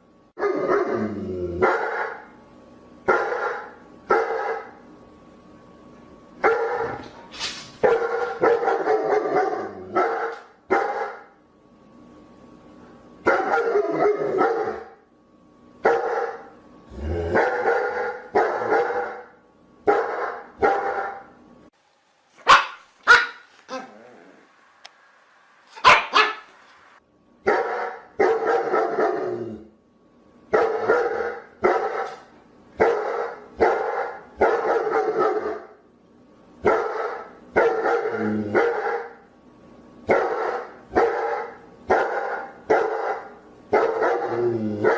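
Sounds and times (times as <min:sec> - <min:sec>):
dogs barking: 0:01.6 - 0:02.3, 0:03.1 - 0:04.8, 0:06.4 - 0:07.0, 0:07.8 - 0:11.3, 0:13.2 - 0:15.0, 0:15.8 - 0:16.5, 0:17.3 - 0:21.3, 0:22.4 - 0:23.9, 0:25.8 - 0:26.6, 0:27.4 - 0:29.3, 0:30.5 - 0:35.8, 0:36.6 - 0:39.2, 0:40.1 - 0:44.9.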